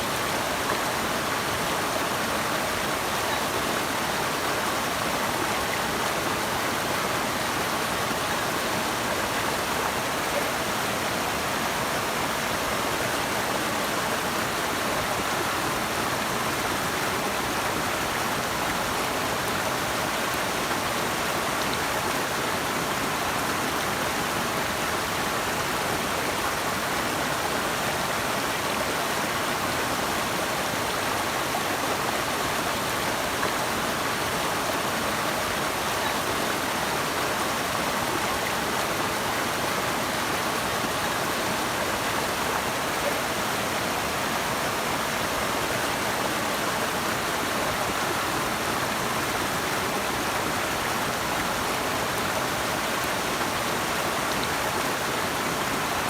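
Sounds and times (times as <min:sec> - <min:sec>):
water rushing: 0:00.0 - 0:56.0.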